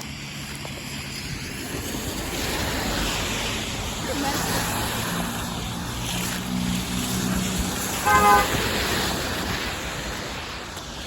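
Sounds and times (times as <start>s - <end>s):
vehicle hum: 0.0s - 10.9s
rain on wet street: 0.0s - 11.0s
wind on microphone: 0.5s - 11.0s.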